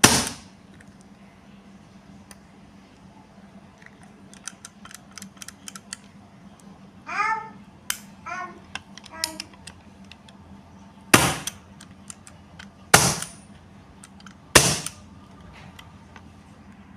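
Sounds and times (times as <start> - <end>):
airsoft pistol shots: 0.0 - 0.5, 11.2 - 11.6, 12.9 - 13.4, 14.6 - 15.0
handling clicks: 3.7 - 6.7, 7.9 - 10.4, 11.2 - 16.3.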